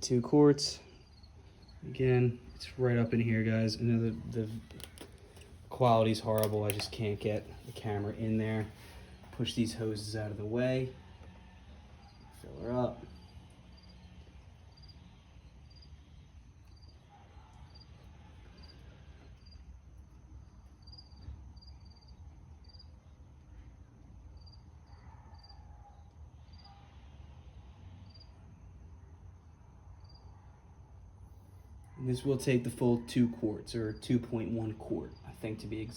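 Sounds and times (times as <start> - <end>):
cricket chirping: 0.0 - 7.1, 11.5 - 35.9
soft handling noises: 2.5 - 10.3.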